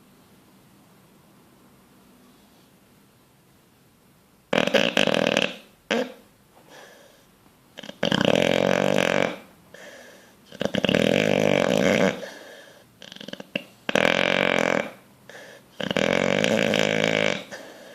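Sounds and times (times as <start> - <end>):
dog snoring: 4.5 - 6.3, 7.8 - 17.9
dog snorting: 4.5 - 7.0, 7.8 - 17.9.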